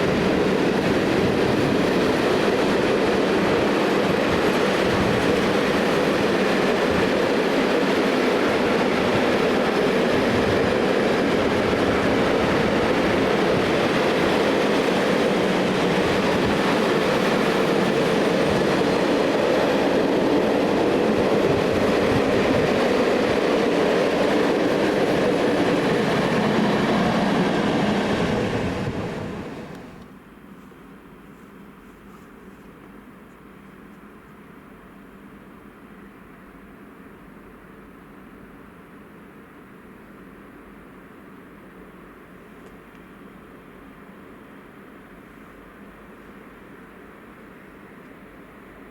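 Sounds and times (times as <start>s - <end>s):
train wheels rolling on track: 0.0s - 30.2s.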